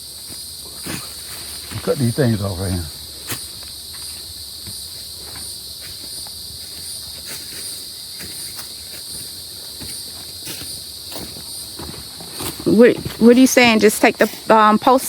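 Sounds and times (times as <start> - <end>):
insects droning: 0.0 - 15.0
pulsing insect chirp: 0.0 - 15.0
faint footsteps: 2.9 - 15.0
rustling in brush: 3.2 - 15.0.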